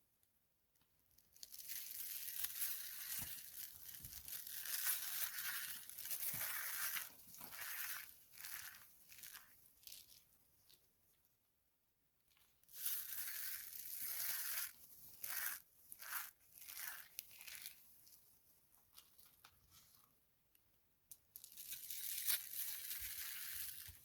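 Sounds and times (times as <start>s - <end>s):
dry soap crunching: 1.2s - 10.8s, 12.7s - 18.2s, 21.3s - 24.0s.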